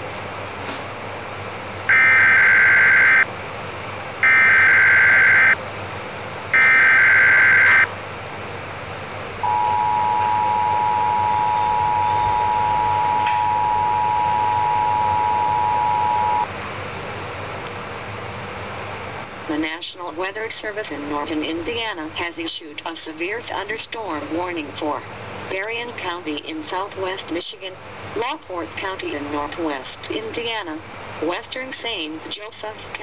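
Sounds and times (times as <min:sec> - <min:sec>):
two-tone attention signal: 0:01.9 - 0:03.2, 0:04.2 - 0:05.6, 0:06.6 - 0:07.9, 0:09.4 - 0:16.5
digital data tone bursts: 0:01.9 - 0:03.3, 0:04.2 - 0:05.6, 0:06.6 - 0:07.9.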